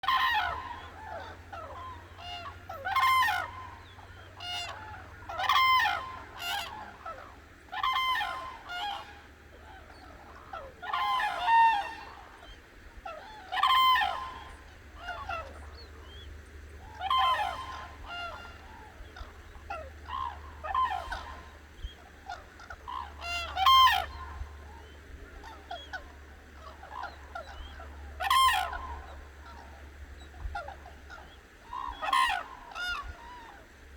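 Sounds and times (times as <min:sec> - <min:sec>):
cranes trumpeting calls: 0:00.0 - 0:33.9
faint bird calls: 0:00.0 - 0:33.9.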